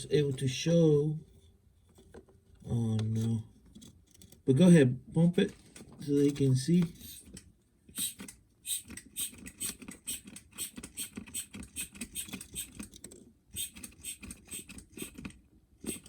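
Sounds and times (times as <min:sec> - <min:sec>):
hand vacuum pump clicking: 0:07.0 - 0:16.0.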